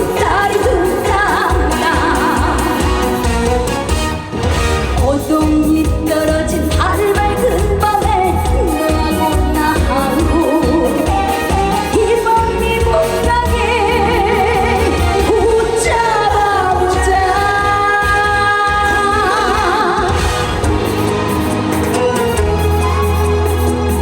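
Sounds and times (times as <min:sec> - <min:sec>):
woman singing with vibrato: 0:00.0 - 0:03.5, 0:04.9 - 0:20.7
live band with steady beat: 0:00.0 - 0:24.0.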